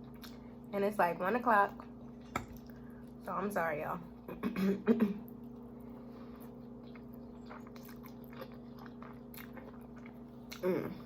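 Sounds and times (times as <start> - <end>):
steady low hum: 0.0 - 11.0
person chewing food: 5.2 - 11.0.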